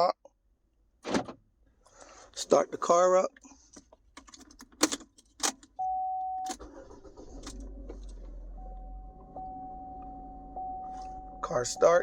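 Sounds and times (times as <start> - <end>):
car engine starting and idling: 4.2 - 12.0
steady chime tone: 8.6 - 12.0.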